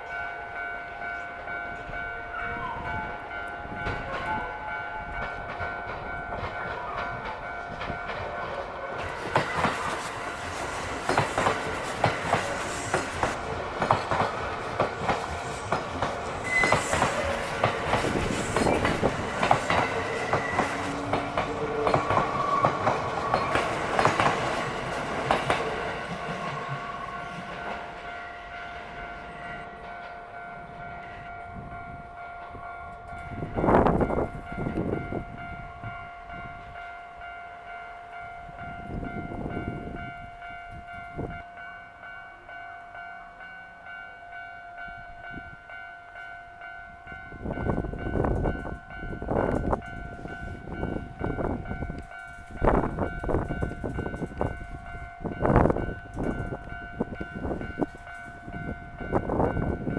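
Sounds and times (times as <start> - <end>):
level crossing warning bell: 0.0 - 59.9
train wheels clattering: 3.4 - 30.9, 47.5 - 59.9.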